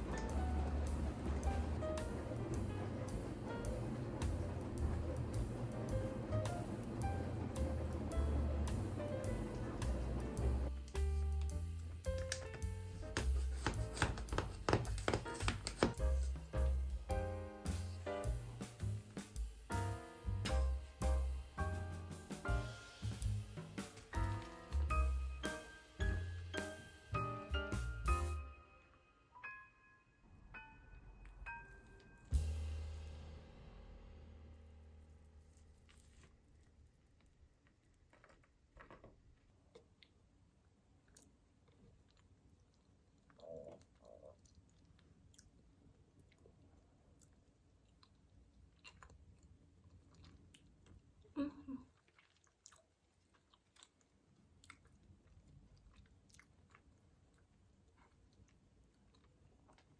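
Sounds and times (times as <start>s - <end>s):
soft ringing bell-like notes: 28.6s - 32.4s
faint chewing: 35.5s - 59.9s.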